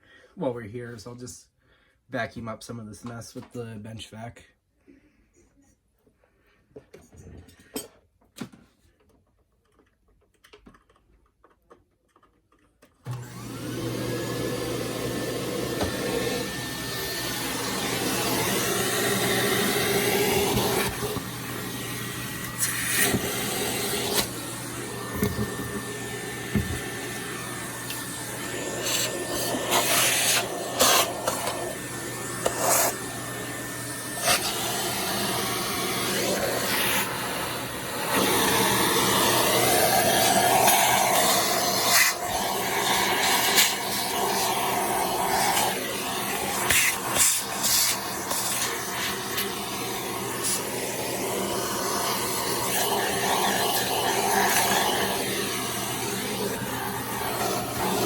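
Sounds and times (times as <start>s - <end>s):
vacuum cleaner motor whine: 13.0s - 58.0s.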